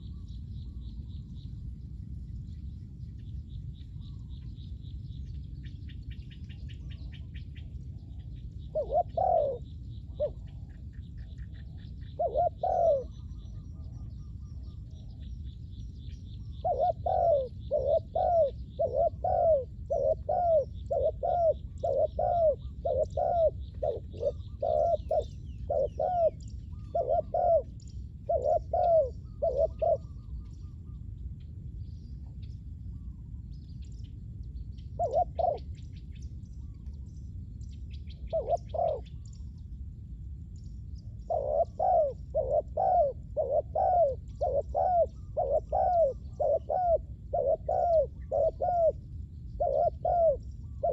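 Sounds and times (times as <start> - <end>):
small birds chirping faintly: 0.0 - 50.9
doves cooing: 8.7 - 14.1, 16.6 - 30.6, 35.0 - 35.8, 38.3 - 39.2, 41.2 - 49.0, 49.6 - 50.9.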